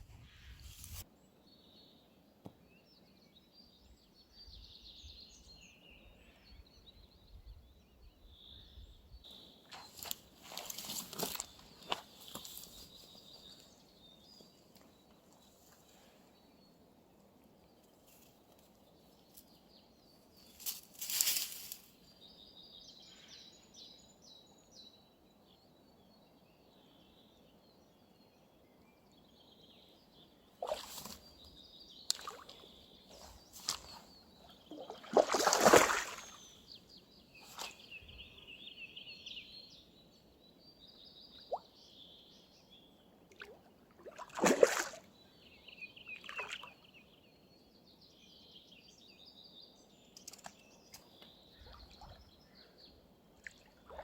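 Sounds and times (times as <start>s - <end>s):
faint outdoor background: 0.0s - 54.0s
songbirds trilling: 1.2s - 54.0s.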